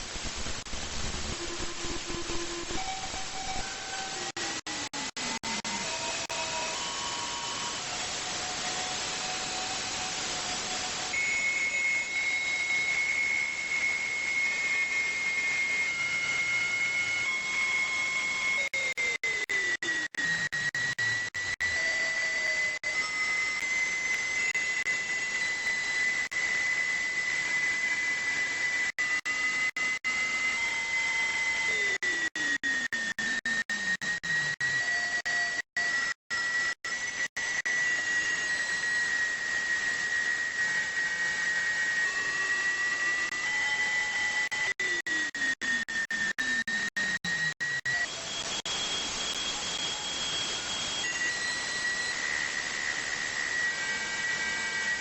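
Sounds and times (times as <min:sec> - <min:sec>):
radio hiss: 0:00.0 - 0:14.8
steady high whistle: 0:01.4 - 0:04.6, 0:05.2 - 0:20.0, 0:20.6 - 0:46.6, 0:47.3 - 0:55.0.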